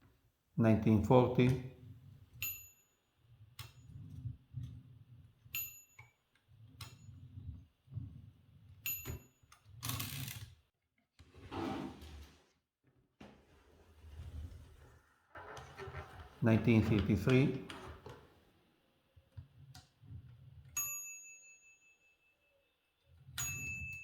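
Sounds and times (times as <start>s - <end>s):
typewriter margin bell ding: 23.4s - 24.0s.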